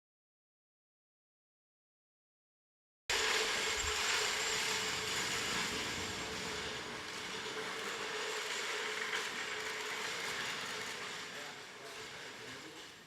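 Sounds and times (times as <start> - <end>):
mechanical running noise: 3.1 - 13.0
constant low hum: 3.2 - 8.2.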